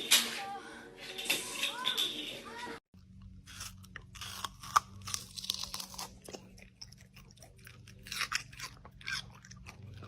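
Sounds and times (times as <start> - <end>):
crunchy food being chewed: 3.1 - 10.0.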